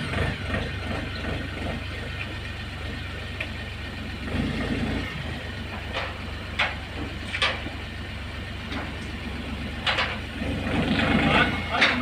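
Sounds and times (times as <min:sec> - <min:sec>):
engine idling: 0:00.0 - 0:12.0.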